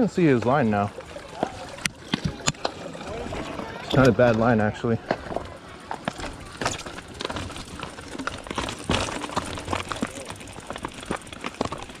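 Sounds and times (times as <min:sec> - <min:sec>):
bike clattering over rocks: 0:00.0 - 0:12.0
footsteps on loose rocks: 0:00.1 - 0:12.0.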